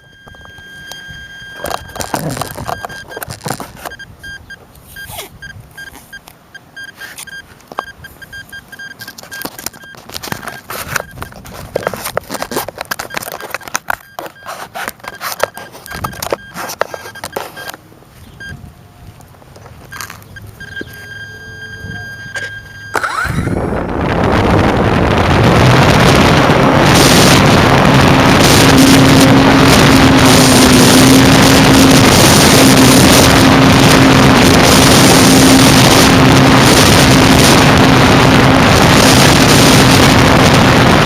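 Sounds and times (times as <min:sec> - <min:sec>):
high-pitched motor whine: 0:00.0 - 0:11.4, 0:19.9 - 0:41.0
wind buffeting microphone: 0:23.2 - 0:41.0.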